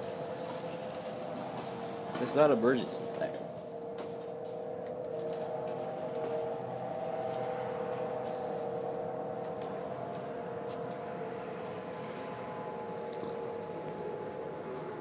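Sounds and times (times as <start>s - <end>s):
steady drone of held tones: 0.0s - 15.0s.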